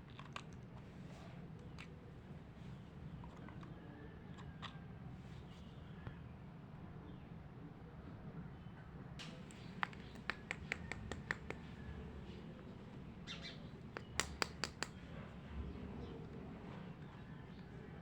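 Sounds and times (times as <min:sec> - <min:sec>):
plastic toy pieces clicking: 0:09.5 - 0:11.7, 0:14.0 - 0:15.0.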